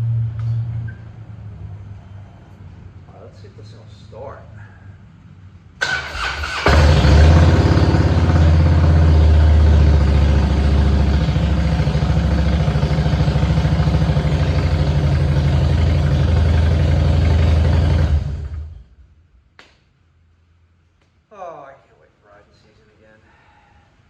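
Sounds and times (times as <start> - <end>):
electric starter cranking: 5.8 - 8.9
motorcycle engine idling: 5.9 - 18.8.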